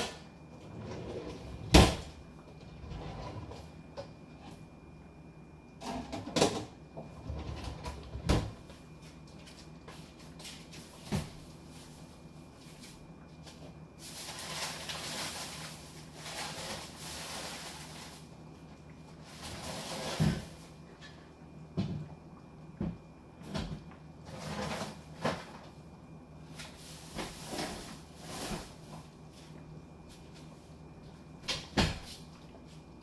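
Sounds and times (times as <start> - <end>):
cupboard doors and cookware clattering: 0.0 - 3.7, 5.8 - 8.6, 19.3 - 22.1, 31.4 - 32.2.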